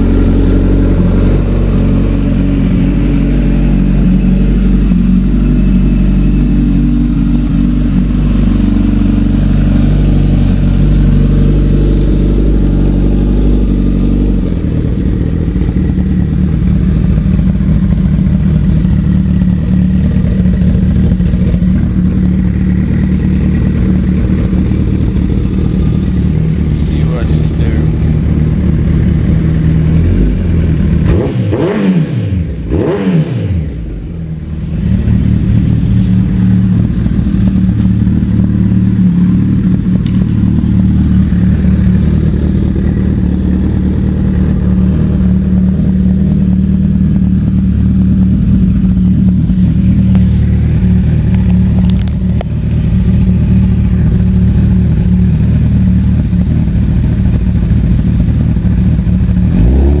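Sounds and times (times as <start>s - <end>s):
motorcycle engine revving and idling: 0.0s - 60.0s.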